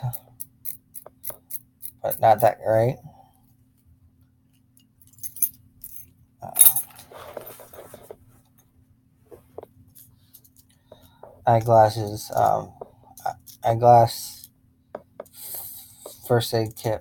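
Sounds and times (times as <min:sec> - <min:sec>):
keys jingling: 0:05.0 - 0:06.9
keys clattering down: 0:05.0 - 0:07.5.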